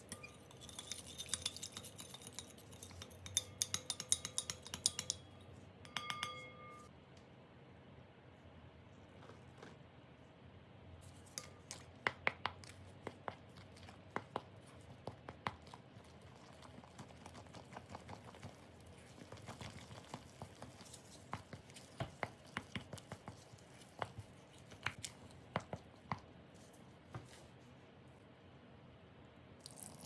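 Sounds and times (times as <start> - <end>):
utensils and dishes clicking: 0.0 - 6.9
air conditioner hum: 0.0 - 30.0.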